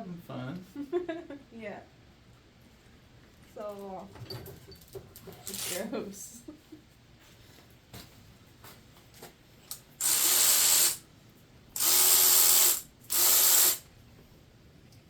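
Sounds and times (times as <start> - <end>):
air ratchet running: 9.7 - 11.0, 11.8 - 13.9.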